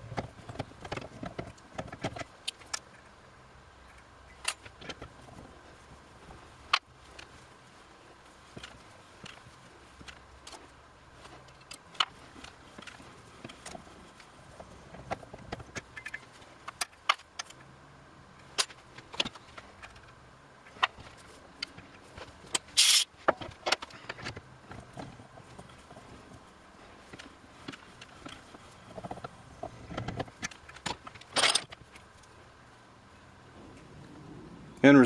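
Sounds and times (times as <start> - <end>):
metallic clicks of steel parts: 0.0 - 3.1, 3.8 - 5.4, 8.5 - 17.7, 18.4 - 26.3, 27.0 - 32.4.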